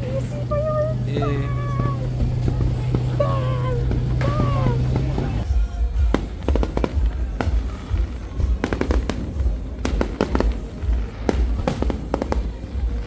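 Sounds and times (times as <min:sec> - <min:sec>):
fireworks bangs and crackles: 0:00.0 - 0:13.0
low rumble: 0:00.0 - 0:13.0.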